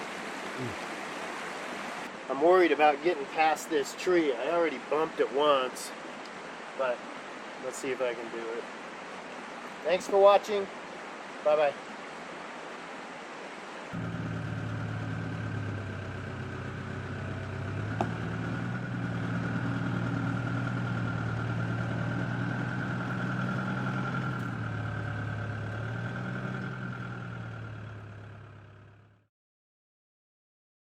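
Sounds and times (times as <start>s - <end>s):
engine running at low revs: 14.0s - 29.3s.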